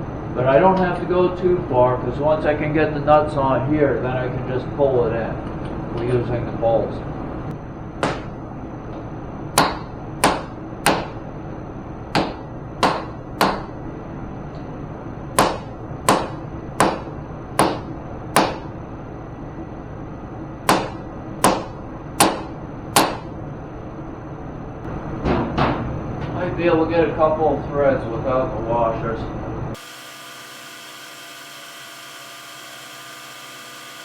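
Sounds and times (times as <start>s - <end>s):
rubber mallet striking metal: 8.0s - 8.3s, 9.6s - 11.2s, 12.2s - 13.7s, 15.4s - 17.8s, 20.7s - 23.3s.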